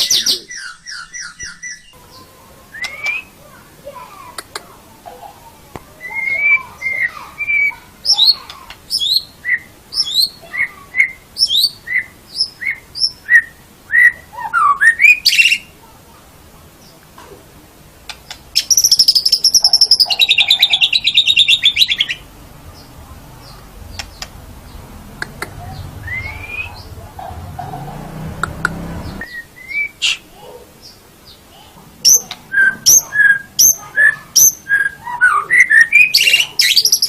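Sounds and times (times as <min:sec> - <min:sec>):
bird whistling song: 0:00.0 - 0:02.0, 0:02.7 - 0:03.4, 0:06.0 - 0:15.7, 0:18.6 - 0:22.2, 0:25.7 - 0:26.9, 0:29.0 - 0:30.2, 0:32.1 - 0:37.0.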